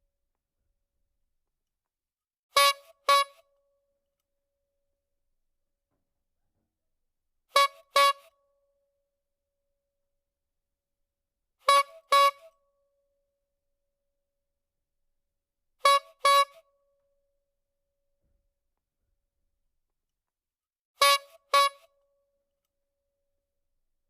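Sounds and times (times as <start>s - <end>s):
clown horn honking: 2.5s - 3.4s, 7.5s - 8.3s, 11.6s - 12.6s, 15.8s - 16.6s, 21.0s - 21.9s.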